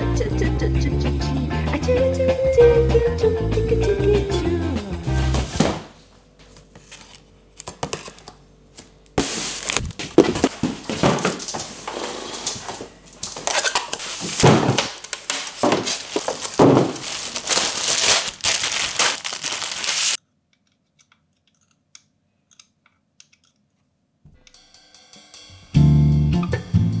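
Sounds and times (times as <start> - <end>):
packaging crinkling and tearing: 6.5 - 8.4, 9.2 - 20.2.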